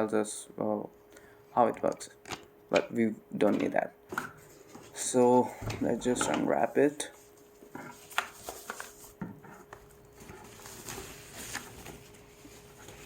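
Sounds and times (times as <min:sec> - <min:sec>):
plastic wrapping crinkling: 0:07.3 - 0:13.0.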